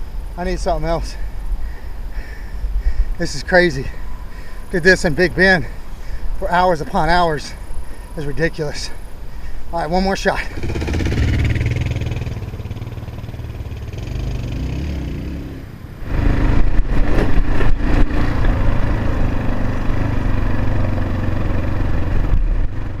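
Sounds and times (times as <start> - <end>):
motorcycle engine revving: 10.4 - 23.0.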